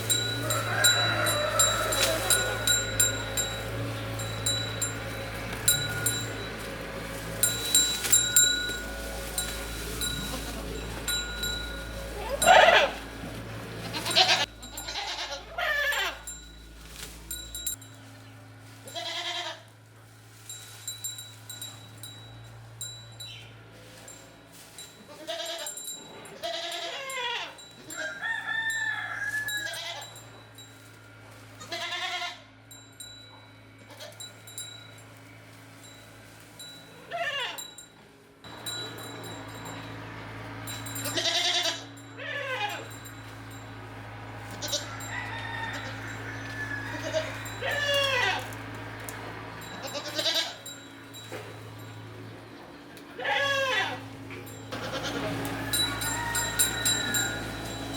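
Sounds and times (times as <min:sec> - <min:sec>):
goats bleating: 0:00.0 - 0:16.4, 0:18.8 - 0:19.7, 0:25.1 - 0:25.8, 0:26.4 - 0:28.1, 0:29.3 - 0:30.2, 0:31.6 - 0:32.5, 0:37.1 - 0:37.7, 0:41.0 - 0:43.0, 0:44.4 - 0:50.7, 0:53.0 - 0:57.9.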